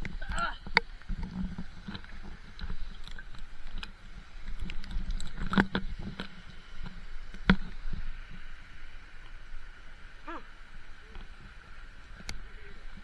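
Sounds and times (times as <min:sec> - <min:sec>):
rain and flowing water: 0:00.0 - 0:13.0.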